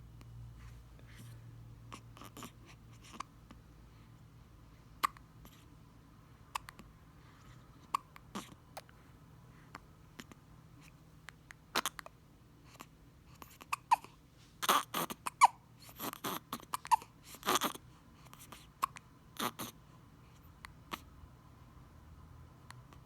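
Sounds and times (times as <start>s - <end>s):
baby hiccuping: 11.7s - 12.1s, 13.4s - 17.8s, 18.8s - 19.8s.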